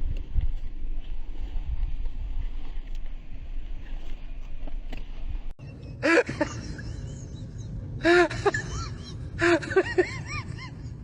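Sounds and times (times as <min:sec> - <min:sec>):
wind noise: 0:00.0 - 0:05.5
low rumble: 0:00.0 - 0:11.0.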